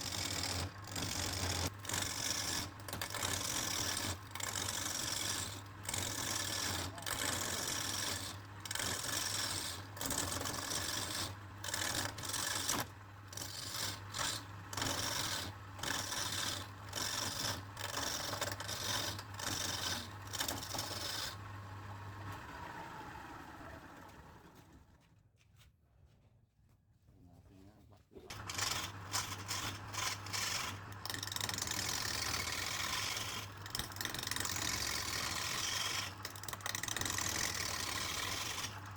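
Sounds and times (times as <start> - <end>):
tool scraping spinning wood: 0.0 - 24.6, 28.3 - 38.9
wood lathe motor hum: 0.0 - 24.7, 28.3 - 38.9.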